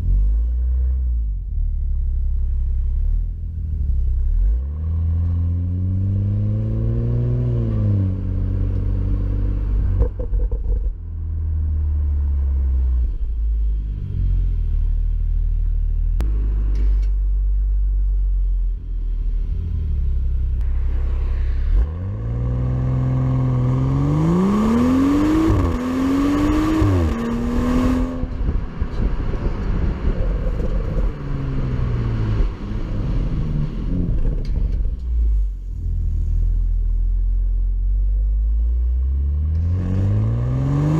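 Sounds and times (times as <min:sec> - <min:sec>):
car engine exhaust rumble: 0:00.0 - 0:40.9
car engine accelerating hard: 0:18.7 - 0:36.3, 0:38.7 - 0:40.9.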